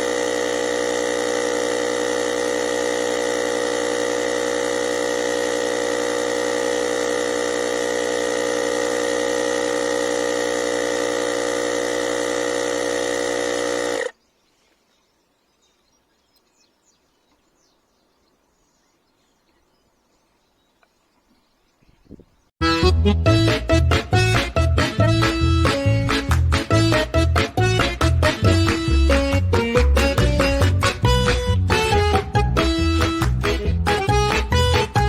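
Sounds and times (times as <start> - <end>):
tyre inflator compressor running: 0.0 - 14.2, 22.6 - 35.0.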